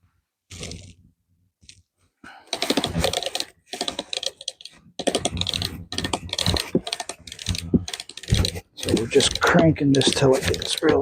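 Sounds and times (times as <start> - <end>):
hand crank clicking: 2.5 - 11.0.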